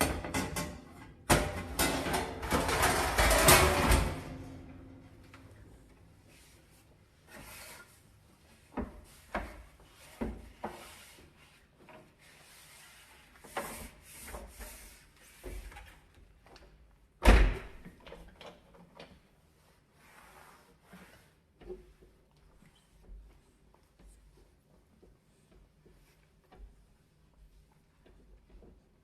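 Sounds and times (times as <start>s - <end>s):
scrubbing strokes: 19.5s - 28.9s.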